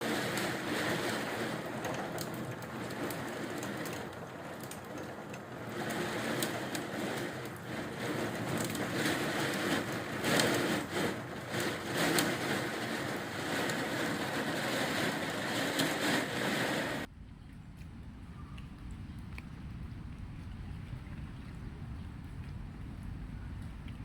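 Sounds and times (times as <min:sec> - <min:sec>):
heavy rain pouring: 0:00.0 - 0:17.1
gusting wind: 0:00.0 - 0:24.0.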